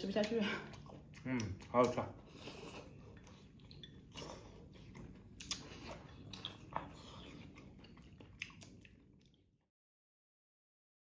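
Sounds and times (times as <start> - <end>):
people chewing food: 0.0 - 9.7.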